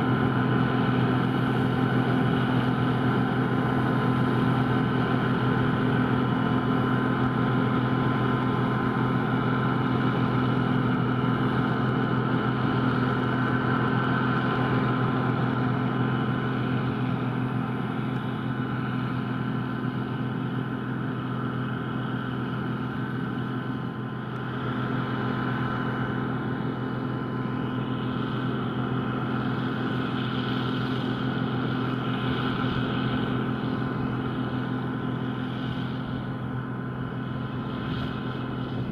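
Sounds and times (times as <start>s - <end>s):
combine harvester engine droning: 0.0s - 38.9s.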